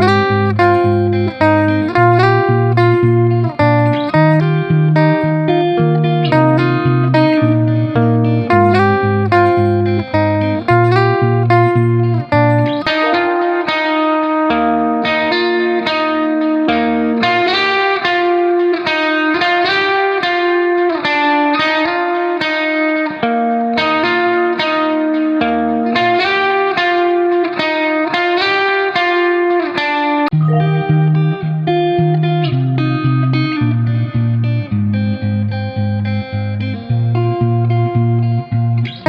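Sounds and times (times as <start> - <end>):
bass line: 0.0 - 13.3, 30.3 - 31.8
plucked guitar picking: 0.0 - 39.0.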